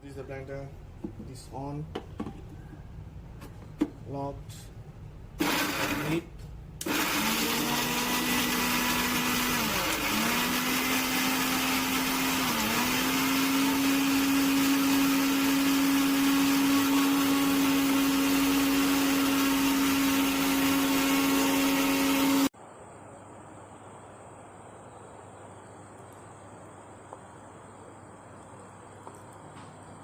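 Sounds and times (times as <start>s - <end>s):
mixer grinder motor whining: 5.4s - 6.2s, 6.8s - 22.5s.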